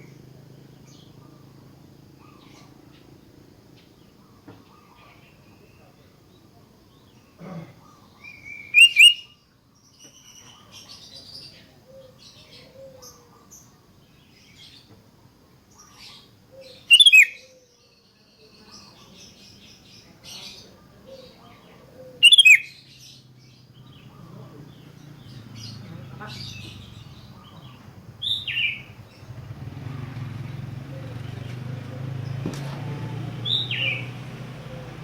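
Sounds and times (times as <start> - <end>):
soft bird chirps: 0.0 - 15.0, 15.7 - 35.0
bird gliding call phrases: 7.8 - 9.4, 16.6 - 17.6, 22.0 - 22.9, 25.3 - 35.0.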